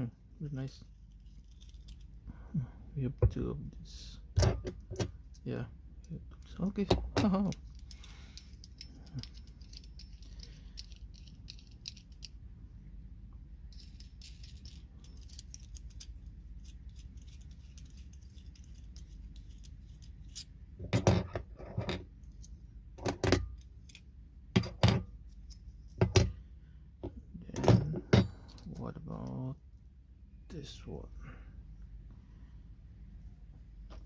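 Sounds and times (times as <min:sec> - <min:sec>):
small parts clicking and rattling: 0:00.6 - 0:02.2, 0:04.4 - 0:12.4, 0:13.6 - 0:26.4
parts knocking and clacking: 0:06.8 - 0:12.4, 0:24.6 - 0:26.4, 0:27.0 - 0:29.4.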